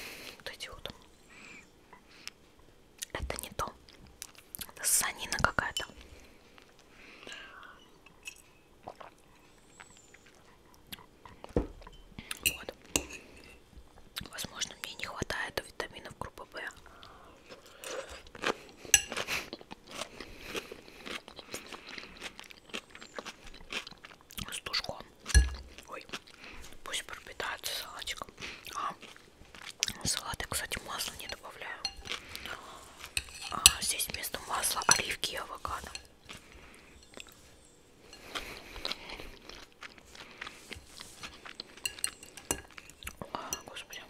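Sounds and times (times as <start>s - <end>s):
chewing crunchy raw vegetables: 16.9s - 26.8s, 28.0s - 43.3s.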